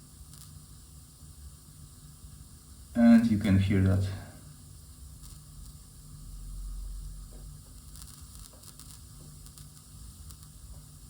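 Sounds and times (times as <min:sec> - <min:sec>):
crackling and popping from speaker: 0:00.3 - 0:00.6, 0:07.3 - 0:11.0.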